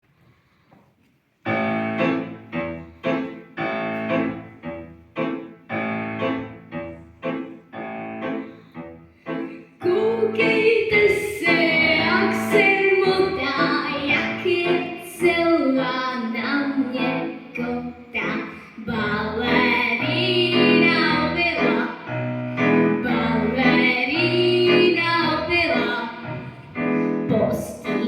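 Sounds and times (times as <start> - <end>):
piano chords: 1.4 - 28.0
girl singing: 9.8 - 22.2, 22.8 - 28.0.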